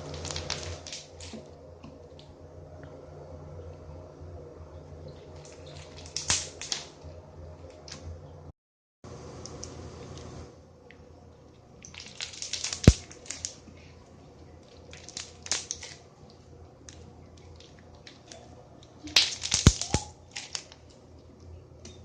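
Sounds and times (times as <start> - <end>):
slime crackling: 0.0 - 1.4, 5.4 - 7.0, 11.8 - 21.0.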